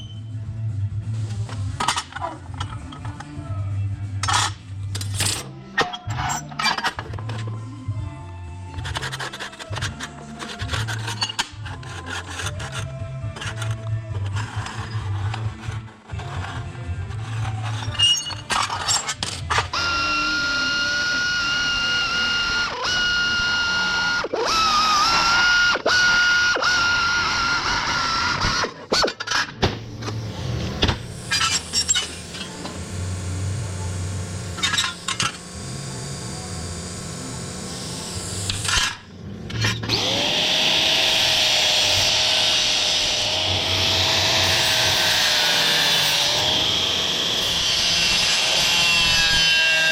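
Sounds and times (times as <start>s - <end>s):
power tool high whine: 19.7s - 28.6s, 30.2s - 49.9s
motor spinning up: 30.1s - 39.0s, 39.6s - 49.9s.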